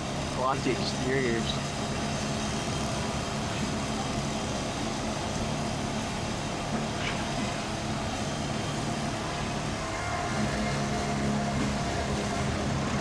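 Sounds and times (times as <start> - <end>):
engine hum: 0.0 - 13.0
road and traffic rush: 0.0 - 13.0.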